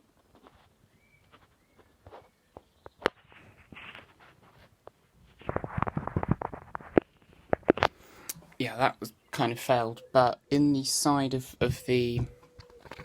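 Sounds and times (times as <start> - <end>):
rubbing and tapping: 1.3 - 7.9.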